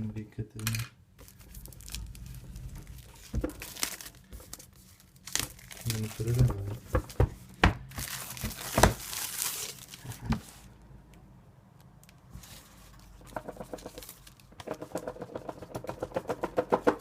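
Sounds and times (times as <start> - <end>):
plastic wrap tearing and crumpling: 0.6 - 6.8, 7.9 - 10.7, 13.8 - 14.5
cardboard packaging rubbing: 1.2 - 10.7.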